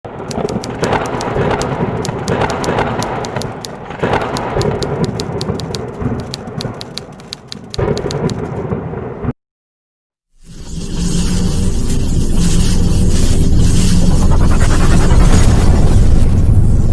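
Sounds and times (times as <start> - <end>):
sharp crackles: 0.2 - 8.7.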